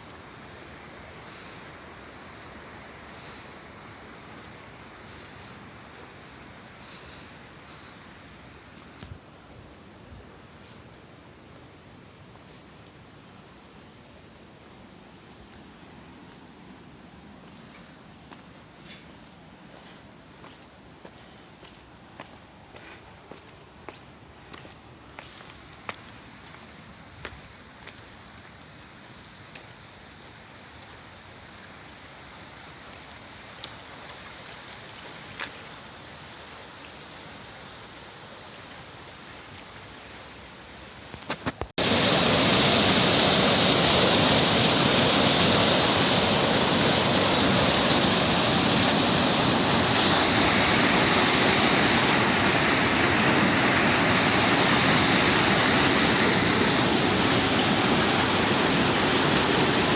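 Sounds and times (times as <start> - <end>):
faint outdoor hiss: 0.0 - 59.9
fast-flowing stream rushing: 41.8 - 59.9.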